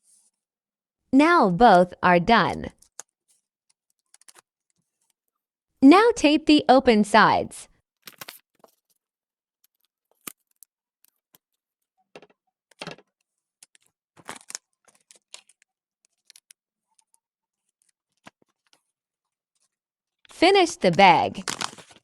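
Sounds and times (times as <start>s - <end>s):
paper rustling: 2.7s - 5.2s, 8.0s - 9.0s, 12.2s - 22.0s
sticky tape crackling: 3.7s - 5.2s, 13.6s - 18.9s, 20.7s - 22.0s.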